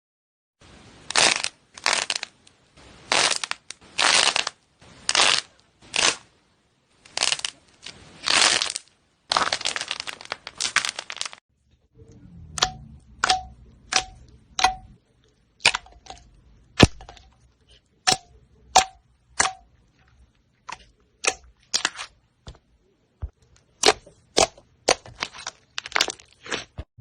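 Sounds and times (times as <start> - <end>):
slime squishing by hand: 12.6 - 26.9.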